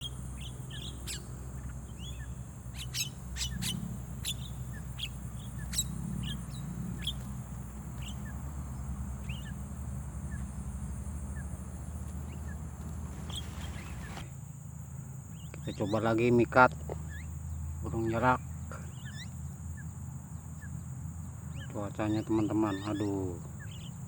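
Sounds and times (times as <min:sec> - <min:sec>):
birds chirping: 0:00.0 - 0:14.4, 0:15.1 - 0:24.0
steady low hum: 0:00.0 - 0:22.5.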